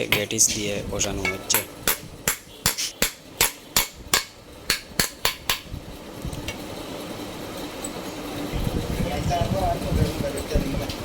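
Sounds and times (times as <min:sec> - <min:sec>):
hammer tapping metal bearing: 0:00.0 - 0:05.7.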